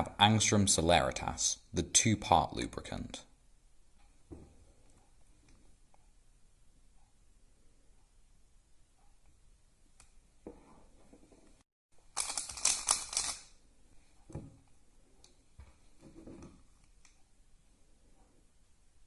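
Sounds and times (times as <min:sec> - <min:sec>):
plastic puzzle cube clicking: 0:12.1 - 0:13.5.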